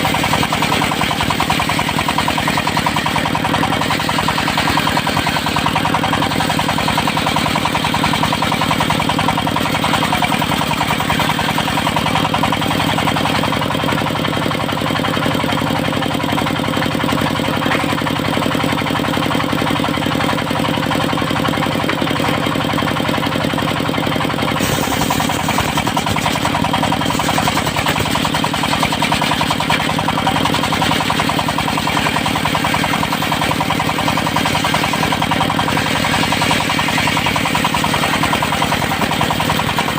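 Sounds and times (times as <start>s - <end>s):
sawmill engine running: 0.0s - 39.9s
saw hissing: 24.6s - 28.2s.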